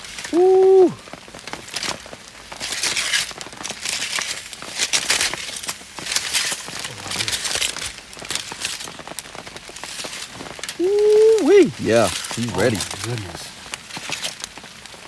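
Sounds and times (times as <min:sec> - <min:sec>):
aluminium foil crinkling: 0:01.5 - 0:10.8.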